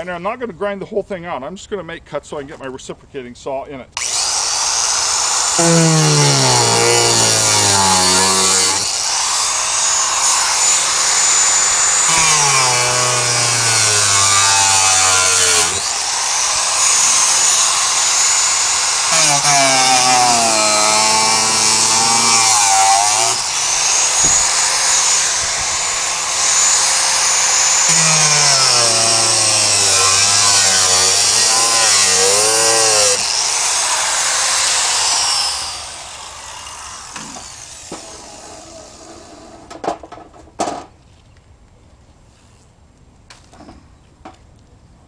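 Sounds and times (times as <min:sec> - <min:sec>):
angle grinder cutting steel: 0:04.0 - 0:39.6.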